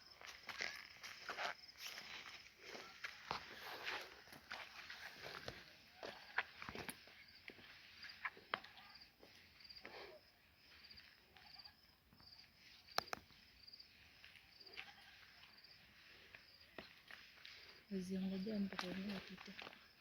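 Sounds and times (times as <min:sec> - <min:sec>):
insect chirping: 0:00.0 - 0:20.0
soft footsteps: 0:00.0 - 0:20.0
sharp clicks: 0:13.0 - 0:13.3.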